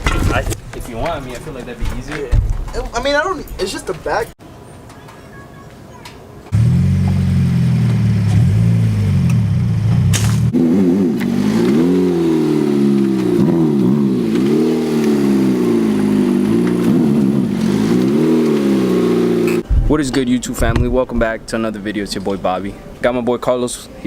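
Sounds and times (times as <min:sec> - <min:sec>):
car engine revving: 0:06.5 - 0:19.6.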